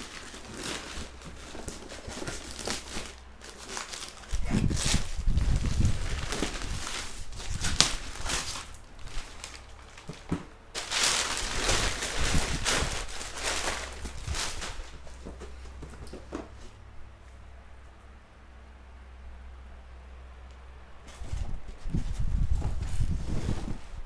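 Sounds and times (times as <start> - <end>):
packaging rustling and crinkling: 0.0 - 16.7.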